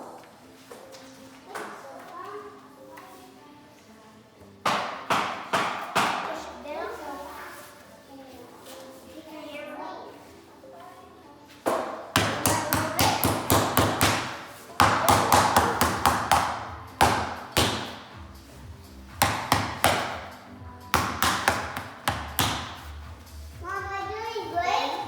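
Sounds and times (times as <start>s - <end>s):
hammer striking floor planks: 11.7s - 18.1s, 19.2s - 20.3s, 21.0s - 22.8s.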